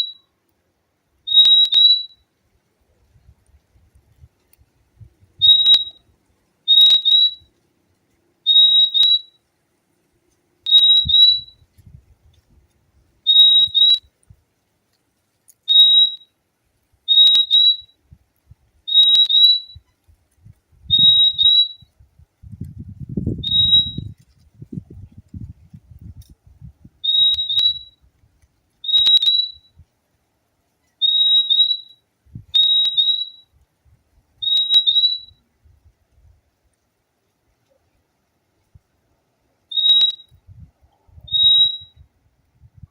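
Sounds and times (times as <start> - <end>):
bird whistling calls: 0.0 - 0.2, 1.3 - 2.2, 5.4 - 6.0, 6.7 - 7.5, 8.4 - 9.4, 10.7 - 11.6, 13.2 - 14.1, 15.7 - 16.3, 17.1 - 18.0, 18.9 - 20.0, 20.9 - 21.9, 23.4 - 24.2, 27.0 - 28.0, 28.8 - 29.7, 30.9 - 33.5, 34.4 - 35.4, 39.7 - 40.4, 41.2 - 42.0.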